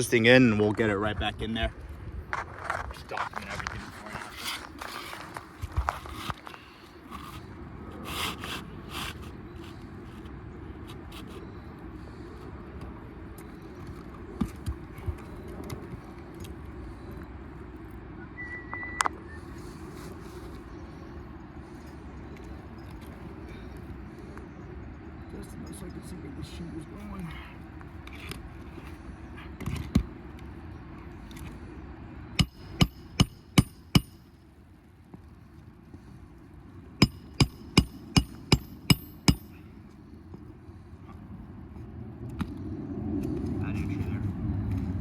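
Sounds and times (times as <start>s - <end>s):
steady outdoor rumble: 0.0s - 45.0s
high beep: 18.3s - 19.4s
hammer striking roofing nail: 32.4s - 34.2s, 37.0s - 39.6s.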